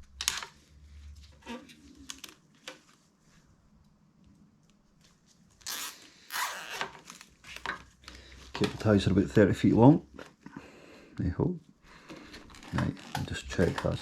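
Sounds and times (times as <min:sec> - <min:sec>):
faint handling rustles: 0:00.3 - 0:06.3, 0:06.9 - 0:10.6, 0:11.6 - 0:14.0
cable ties zipping: 0:05.6 - 0:07.3.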